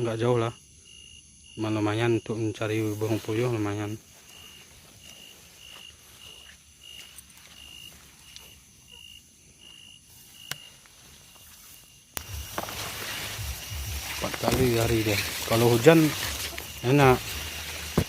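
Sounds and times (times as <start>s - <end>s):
high-pitched insect hum: 0.0s - 18.0s
insects chirping: 0.0s - 18.0s
loud rustling: 12.2s - 18.0s.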